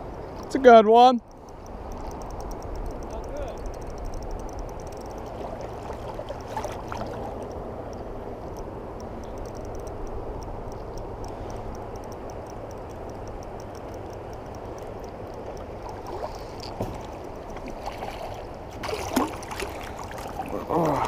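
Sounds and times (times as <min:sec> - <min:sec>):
light regular ticking: 0:00.0 - 0:21.0
river water rushing: 0:05.1 - 0:08.2, 0:15.1 - 0:21.0.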